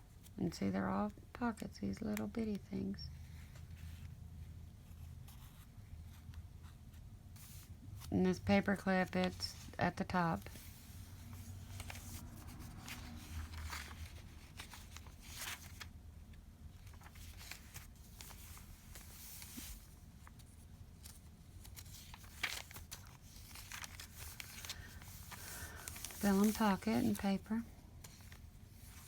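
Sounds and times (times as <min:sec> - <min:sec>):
paper rustling: 0:10.4 - 0:15.9, 0:16.8 - 0:29.0.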